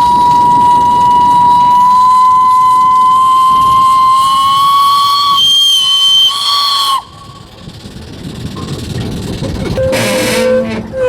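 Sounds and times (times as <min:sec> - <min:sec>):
steam whistle blowing: 0:00.0 - 0:07.6, 0:09.8 - 0:11.0
steam hissing: 0:00.0 - 0:11.0.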